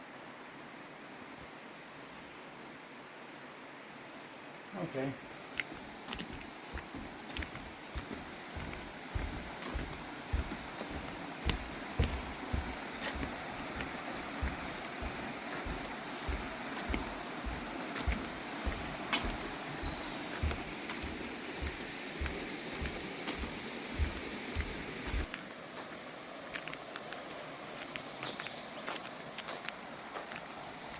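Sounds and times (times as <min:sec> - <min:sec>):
creek rushing: 0:05.2 - 0:30.9
footsteps on a trail: 0:05.4 - 0:30.9
bird chirping: 0:14.4 - 0:21.7.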